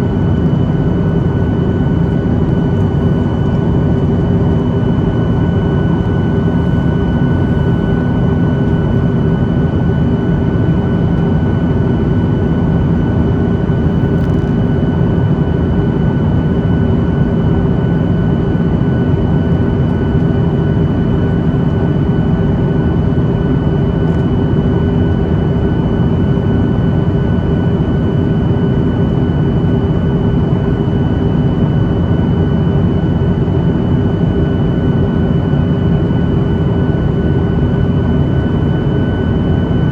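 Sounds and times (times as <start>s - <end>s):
jet airliner engine rumble: 0.0s - 39.9s.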